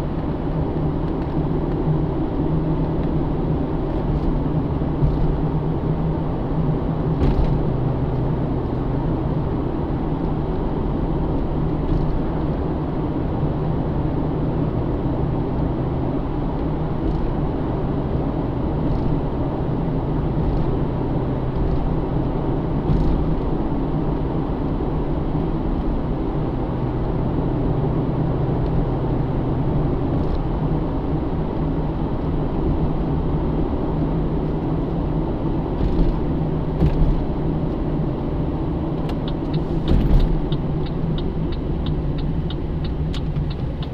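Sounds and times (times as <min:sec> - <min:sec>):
car engine cruising: 0:00.0 - 0:43.9
tyre and road noise: 0:00.0 - 0:43.9.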